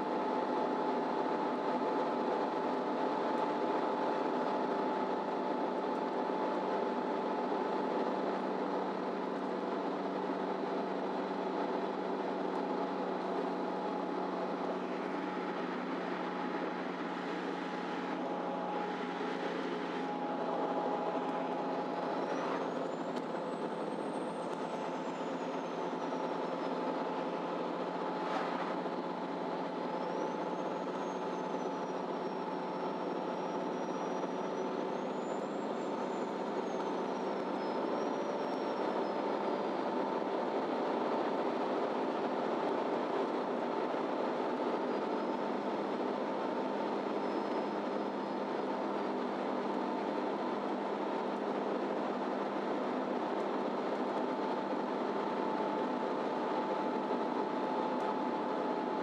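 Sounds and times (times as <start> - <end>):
bus engine running: 0.0 - 59.0
high whine: 11.8 - 37.9.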